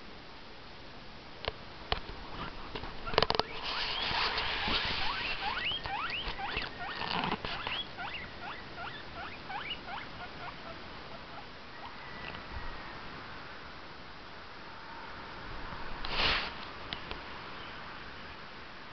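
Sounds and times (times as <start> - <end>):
guinea pig squeaking: 2.3 - 12.0.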